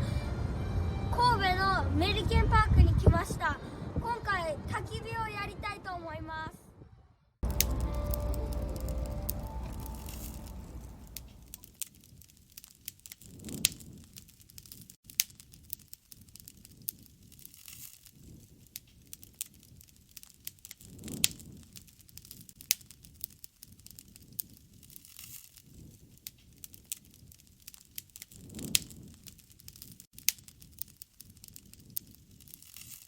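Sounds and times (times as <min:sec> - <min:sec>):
low rumbles: 0:07.4 - 0:12.3
campfire crackling and popping: 0:07.4 - 0:33.0.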